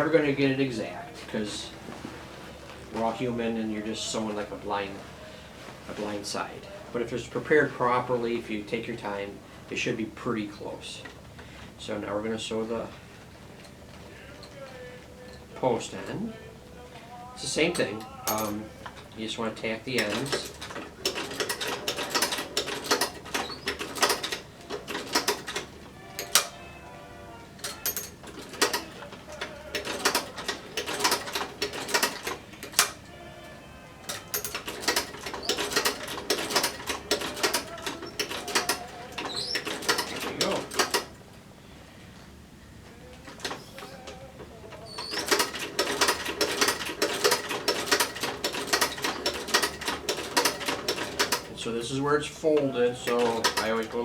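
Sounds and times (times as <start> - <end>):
needle mechanism clattering: 17.2 - 26.8, 27.5 - 41.3, 42.8 - 54.0
sewing machine stitching: 17.3 - 26.7, 27.6 - 33.2, 34.0 - 41.2, 43.2 - 54.0.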